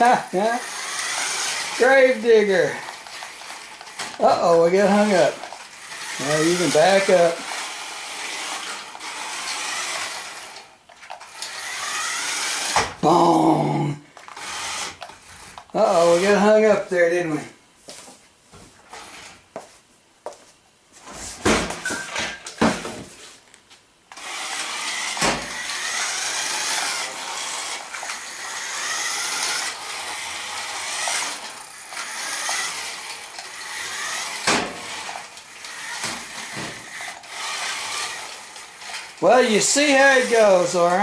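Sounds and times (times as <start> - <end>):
electric motor and gears whirring: 0.0 - 17.4, 18.8 - 19.4, 24.1 - 41.0
toy truck knocks and clatters: 0.7 - 13.0, 24.1 - 40.7.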